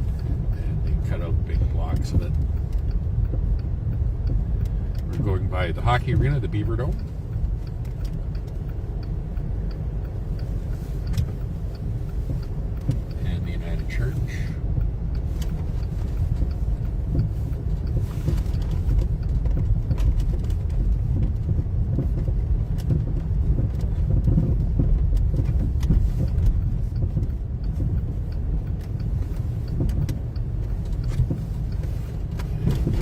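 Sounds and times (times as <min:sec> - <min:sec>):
car engine and tyres rumbling: 0:00.0 - 0:33.0.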